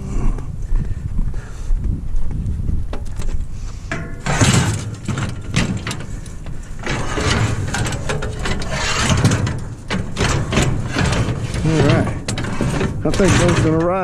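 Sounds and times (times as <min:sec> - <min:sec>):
aluminum scrap clattering: 0:03.9 - 0:14.0.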